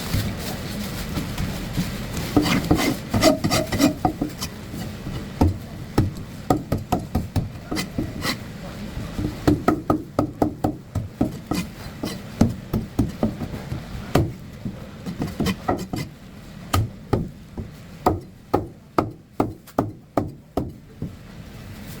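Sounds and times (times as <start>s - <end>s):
knife chopping fish on wooden block: 2.4s - 4.5s, 5.4s - 8.4s, 9.2s - 16.1s, 16.7s - 21.1s.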